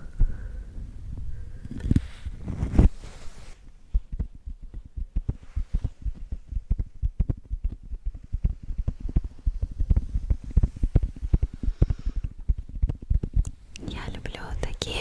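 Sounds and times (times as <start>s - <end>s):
rustling swish: 1.9s - 3.7s.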